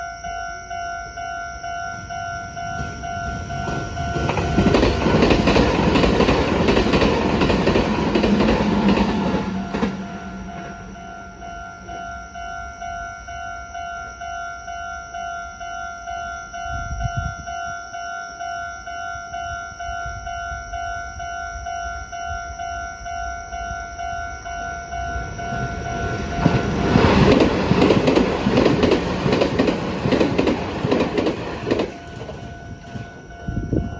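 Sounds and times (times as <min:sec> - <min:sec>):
railway crossing alarm dinging: 0:00.0 - 0:33.9
train wheel clatter: 0:02.8 - 0:11.0, 0:25.5 - 0:33.9.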